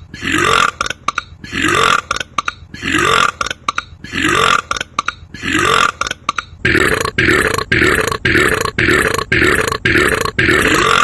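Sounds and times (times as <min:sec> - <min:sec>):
man belching: 0:06.7 - 0:11.0.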